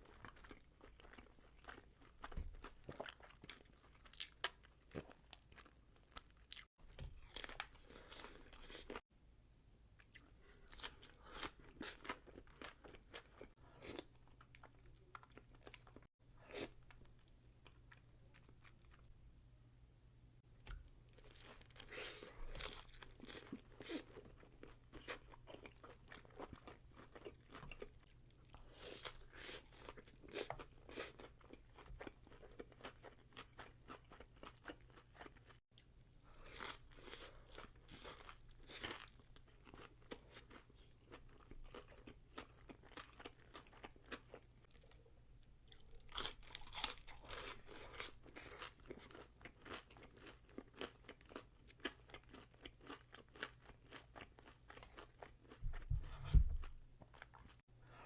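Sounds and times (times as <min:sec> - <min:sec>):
crunchy bites of fried chicken: 0:45.7 - 0:55.6.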